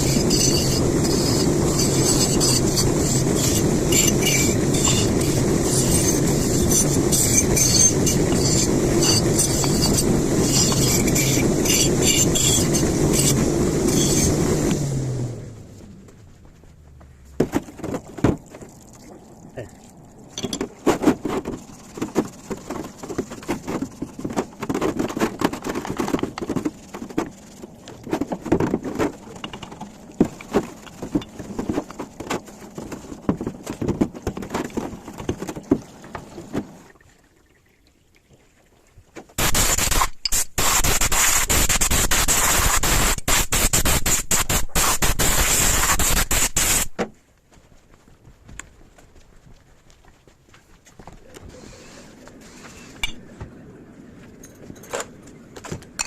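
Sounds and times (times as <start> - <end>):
metal parts clicking and scraping: 0.0 - 14.3, 20.3 - 32.0
loud steady rushing hiss: 39.4 - 47.0.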